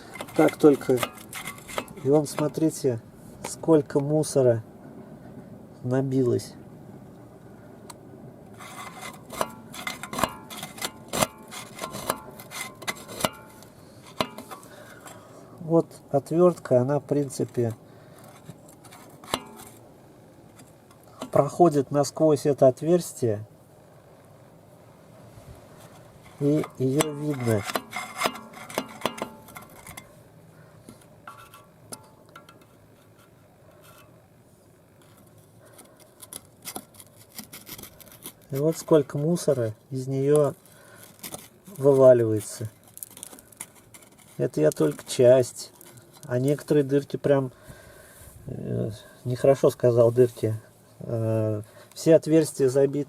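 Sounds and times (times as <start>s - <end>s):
screwdriver scraping metal: 0.0s - 2.7s, 8.6s - 14.7s, 18.2s - 19.8s, 25.8s - 30.2s, 31.2s - 34.1s, 35.0s - 39.5s, 41.0s - 46.6s.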